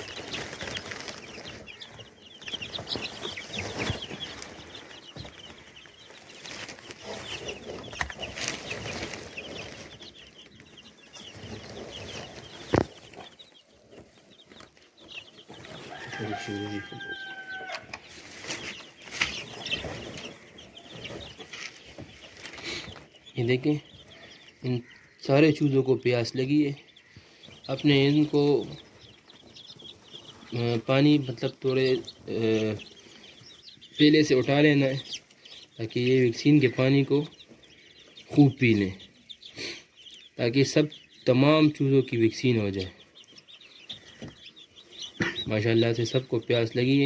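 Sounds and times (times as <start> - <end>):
chicks peeping: 0.0 - 47.0.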